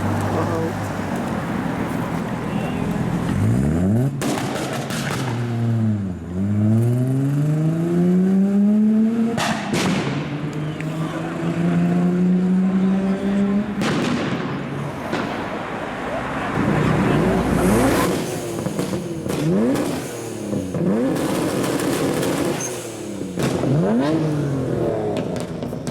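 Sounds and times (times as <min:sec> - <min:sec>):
car engine revving: 0:00.0 - 0:25.9
exhaust pops and bangs: 0:04.2 - 0:05.5, 0:09.3 - 0:10.3, 0:18.0 - 0:22.7, 0:23.4 - 0:24.2, 0:25.0 - 0:25.9.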